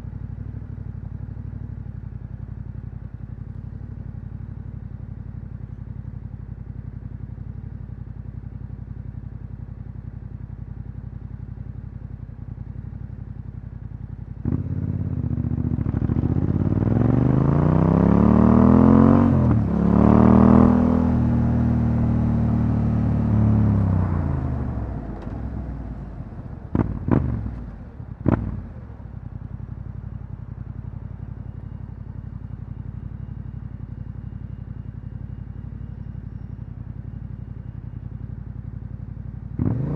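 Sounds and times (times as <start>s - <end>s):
motorcycle engine revving: 14.3s - 29.6s, 34.0s - 39.9s.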